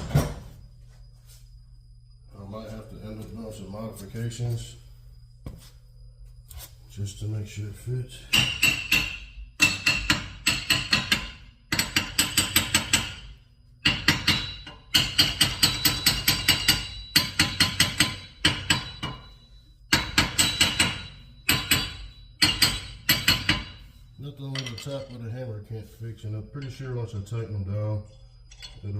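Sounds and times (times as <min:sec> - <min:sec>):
hammer tapping metal: 0:08.3 - 0:13.2, 0:13.8 - 0:19.3, 0:19.9 - 0:23.8.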